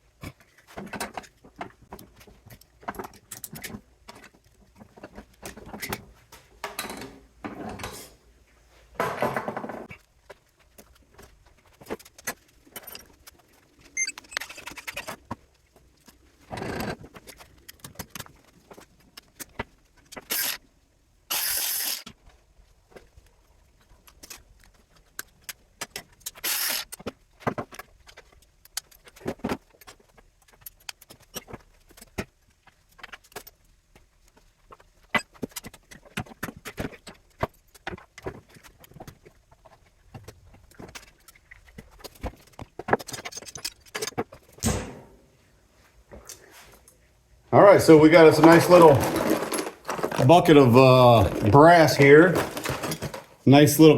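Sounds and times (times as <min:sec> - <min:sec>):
scrap metal clinking and clattering: 0:48.1 - 0:50.7, 0:51.3 - 0:53.4.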